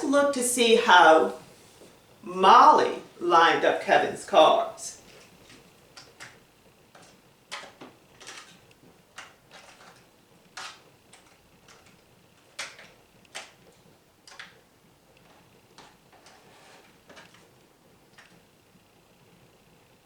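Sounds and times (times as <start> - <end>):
small objects clicking and tapping: 5.4 - 14.6.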